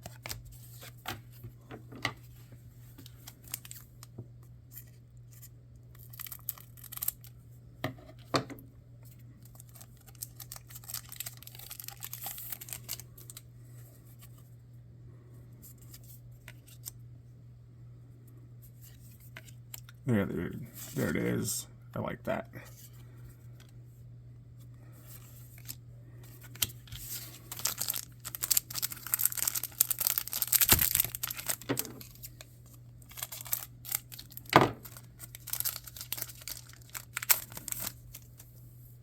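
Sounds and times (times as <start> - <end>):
steady low hum: 0.0 - 39.0.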